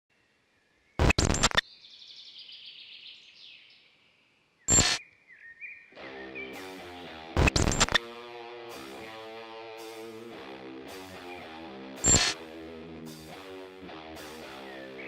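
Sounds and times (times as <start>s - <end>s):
birds chirping and trilling: 0.1s - 8.0s, 11.2s - 12.4s, 14.4s - 15.0s
guitar music: 6.0s - 15.0s.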